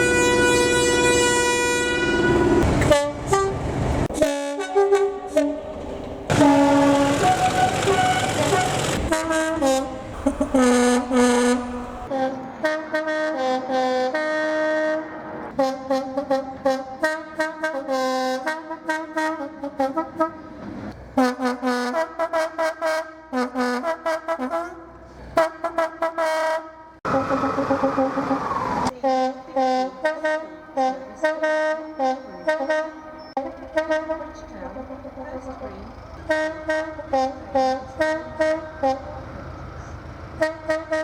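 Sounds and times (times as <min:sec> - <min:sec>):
two-tone train air horn toots: 0:00.0 - 0:35.3, 0:36.2 - 0:41.0.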